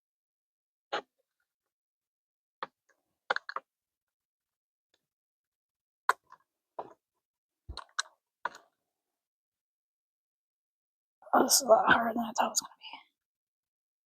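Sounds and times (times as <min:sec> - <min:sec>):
clicks of parts and tools: 0:07.7 - 0:08.7.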